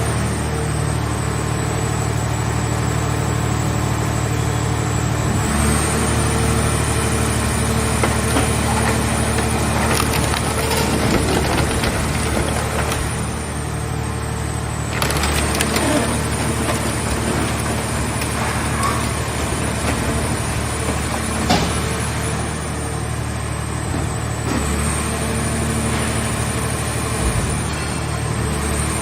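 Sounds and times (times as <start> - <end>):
hydraulic baler running: 0.0 - 29.0
metal creaking and cracking: 7.8 - 13.6, 14.8 - 22.3.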